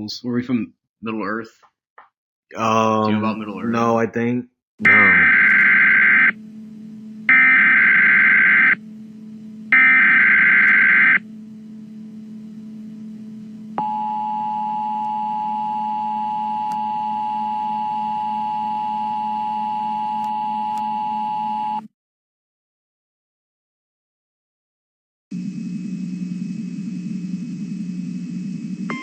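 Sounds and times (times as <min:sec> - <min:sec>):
low steady hum: 0:02.5 - 0:21.8, 0:25.4 - 0:29.0
two-tone attention signal: 0:04.8 - 0:06.4.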